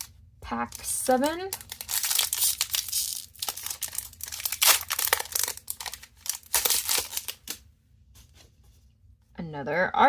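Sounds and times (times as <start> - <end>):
foil wrapper crinkling: 0.7 - 7.6.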